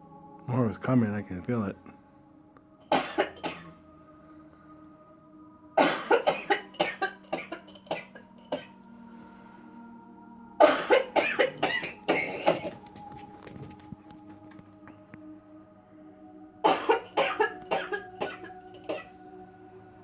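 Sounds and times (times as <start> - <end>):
soft background music: 0.0 - 20.0
person coughing: 2.9 - 3.7, 5.8 - 8.7, 10.6 - 12.8, 16.7 - 19.1.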